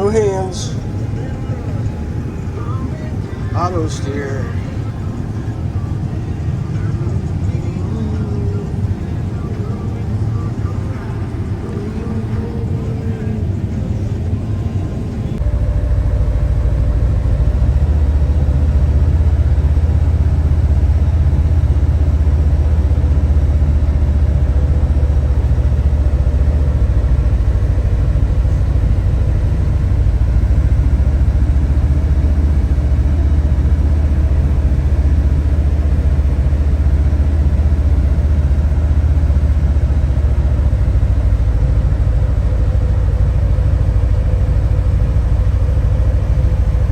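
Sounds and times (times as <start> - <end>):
diesel engine droning: 0.0 - 46.9
faint steady hum: 0.0 - 46.9.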